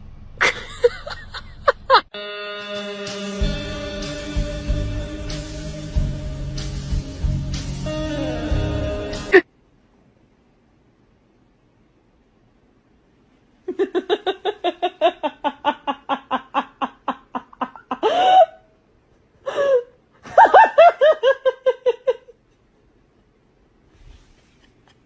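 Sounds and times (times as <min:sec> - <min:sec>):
hearty laughter: 0:00.4 - 0:02.1, 0:13.7 - 0:18.5, 0:19.7 - 0:22.4.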